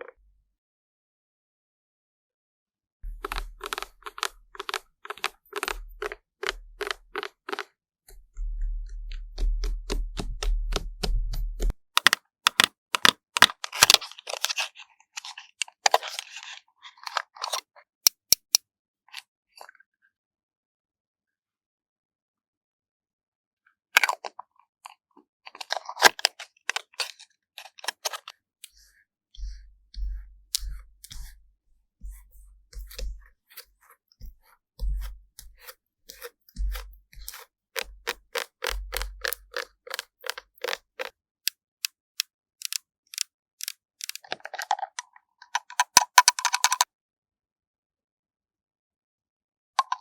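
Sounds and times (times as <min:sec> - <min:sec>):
crisp clicking and crunching: 0:03.1 - 0:07.7, 0:12.0 - 0:18.6, 0:25.5 - 0:28.8, 0:32.8 - 0:41.1.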